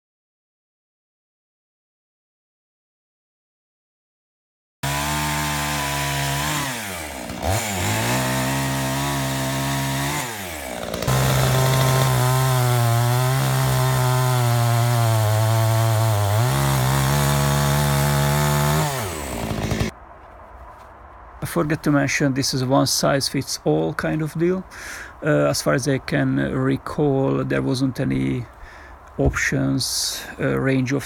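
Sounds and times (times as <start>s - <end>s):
chainsaw engine revving: 4.8s - 19.9s.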